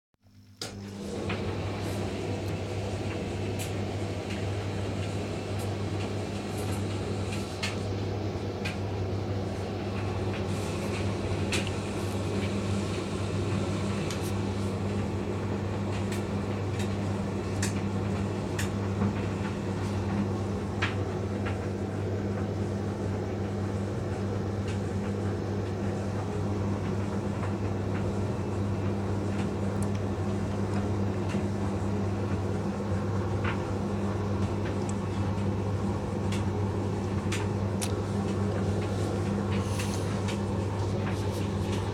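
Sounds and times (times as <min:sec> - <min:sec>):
tumble dryer motor hum: 0:00.2 - 0:41.9.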